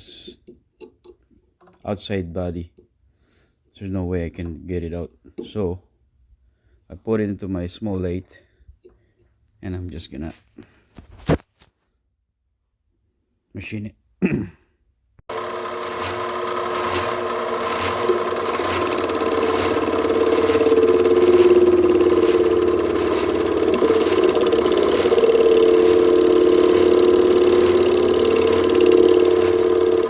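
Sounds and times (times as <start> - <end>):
lathe motor humming: 15.3 - 30.0.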